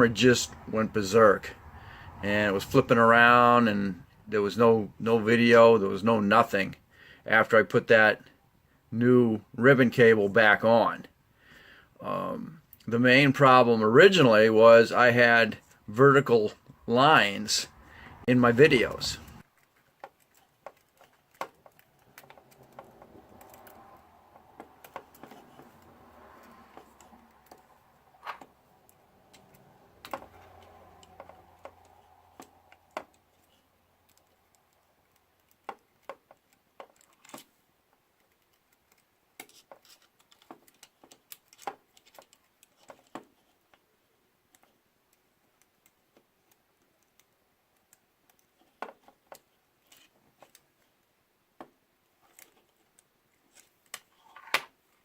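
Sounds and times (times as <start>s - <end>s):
small parts and tools clicking: 19.1s - 51.1s, 52.0s - 54.7s.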